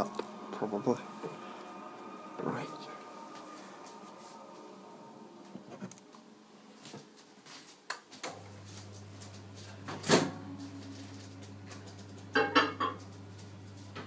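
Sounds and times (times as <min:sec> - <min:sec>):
microwave oven humming: 0:08.3 - 0:14.0.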